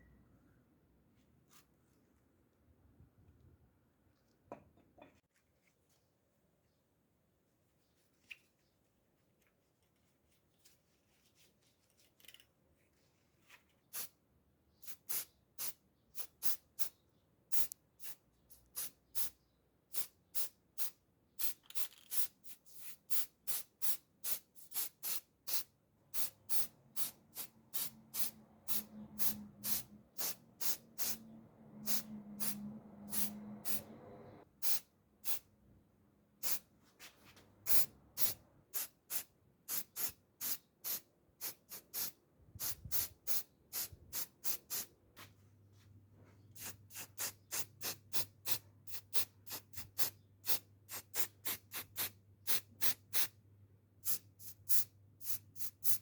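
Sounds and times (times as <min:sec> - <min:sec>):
short sharp hissing bursts: 0:13.9 - 0:14.2, 0:14.8 - 0:35.4, 0:36.4 - 0:36.6, 0:37.7 - 0:44.9, 0:46.5 - 0:53.3, 0:54.0 - 0:56.0.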